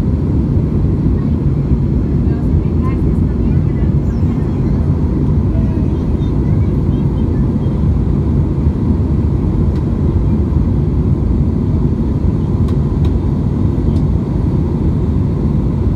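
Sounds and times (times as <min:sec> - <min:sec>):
jet engines rumbling in cabin: 0:00.0 - 0:15.9.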